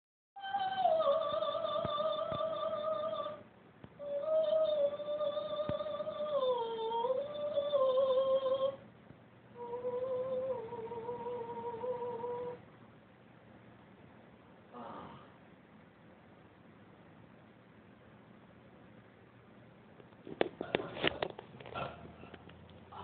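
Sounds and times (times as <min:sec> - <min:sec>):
woman singing high notes: 0:00.4 - 0:03.4, 0:04.0 - 0:08.8.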